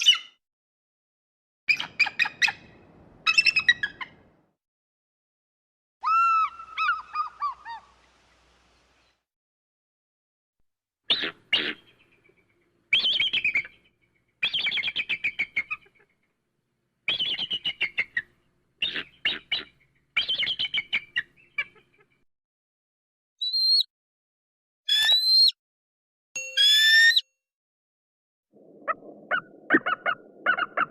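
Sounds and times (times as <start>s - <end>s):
bird whistled call: 12.9s - 13.7s, 14.4s - 15.7s, 17.1s - 18.2s, 18.8s - 21.2s, 23.4s - 23.9s, 24.9s - 25.6s.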